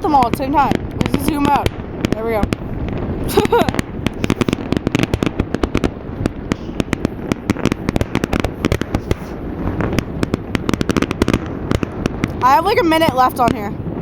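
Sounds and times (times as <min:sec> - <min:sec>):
fireworks bangs and crackles: 0:00.0 - 0:14.0.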